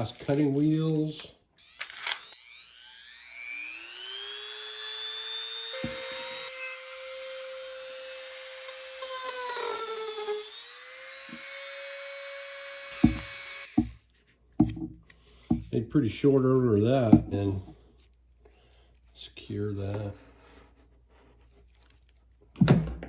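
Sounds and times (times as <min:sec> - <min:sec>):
rotary tool motor whining: 0:01.6 - 0:14.0
knocks: 0:13.0 - 0:14.0.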